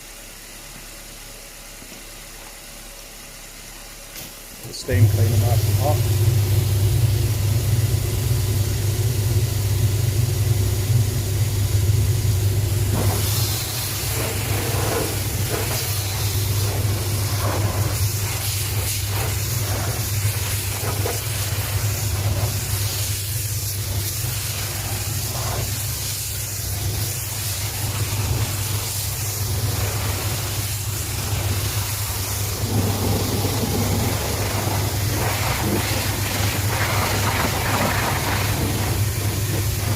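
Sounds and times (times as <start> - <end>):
steam cleaner humming: 0.0 - 39.9
steam spraying hiss: 4.6 - 6.7, 10.8 - 39.9.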